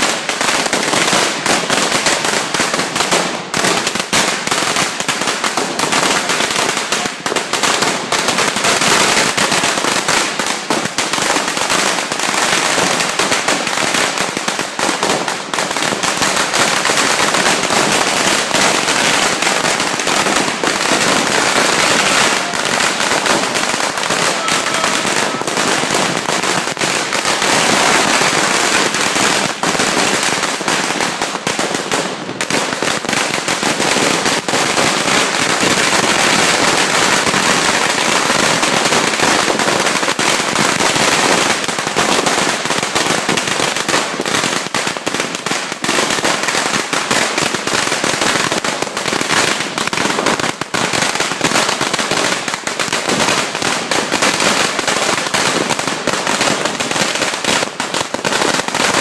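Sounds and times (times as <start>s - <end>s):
firecracker string crackling: 0.0s - 44.2s.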